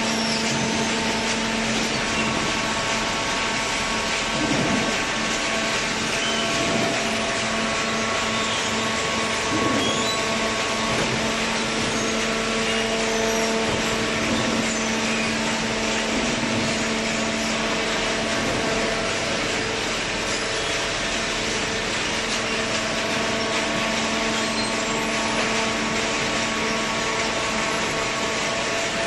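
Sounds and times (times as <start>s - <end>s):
baler machine hum: 0.0s - 29.0s.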